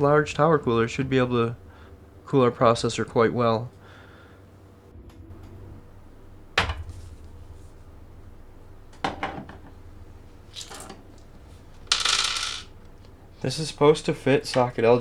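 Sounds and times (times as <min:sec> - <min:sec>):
small metal parts clinking: 0:10.5 - 0:12.8
metal parts rattling: 0:11.7 - 0:12.8.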